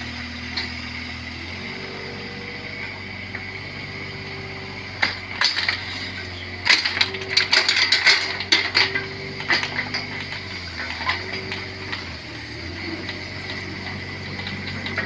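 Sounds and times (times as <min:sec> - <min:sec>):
excavator diesel engine running: 0:00.0 - 0:15.0
metallic clanks and knocks: 0:05.0 - 0:15.0.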